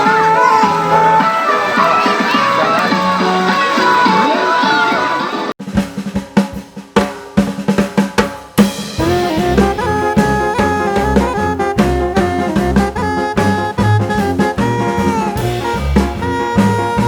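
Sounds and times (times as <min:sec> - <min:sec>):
full band with bass line: 0:00.0 - 0:05.2, 0:08.6 - 0:17.0
drum break: 0:05.6 - 0:17.0.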